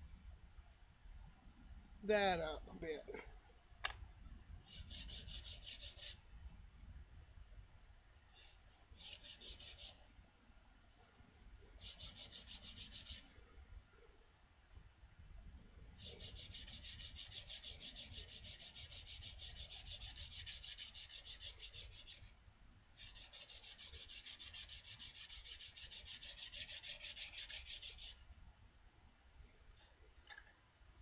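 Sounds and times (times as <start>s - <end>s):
sandpaper sanding steel blade: 4.7s - 6.2s, 9.0s - 10.0s, 11.8s - 13.3s, 16.0s - 22.3s, 23.0s - 28.2s.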